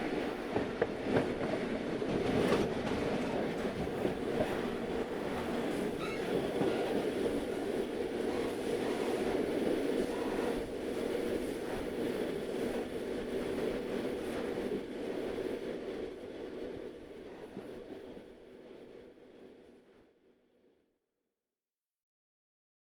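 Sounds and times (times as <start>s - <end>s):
train rumbling on rails: 0.0s - 20.1s
faint wavering squeal: 6.0s - 6.4s.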